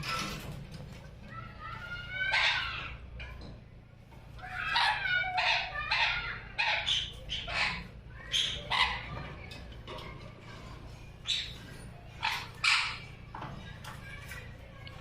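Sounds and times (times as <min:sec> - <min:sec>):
parrot calling: 0:01.4 - 0:03.1, 0:04.4 - 0:09.5, 0:11.2 - 0:13.3.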